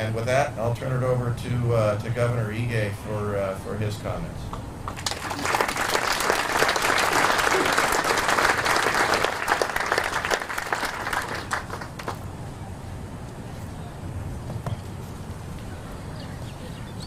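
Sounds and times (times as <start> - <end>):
audience applauding: 4.9 - 12.2.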